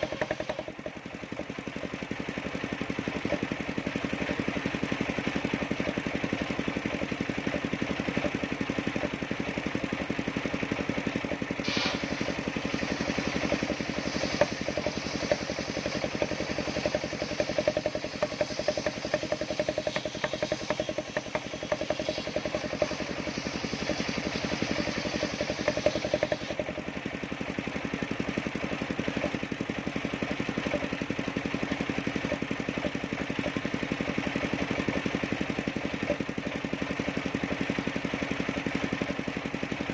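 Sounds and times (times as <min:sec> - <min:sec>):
saw blade cutting log: 0:00.0 - 0:02.3, 0:11.6 - 0:26.9
sawmill engine running: 0:00.0 - 0:39.9.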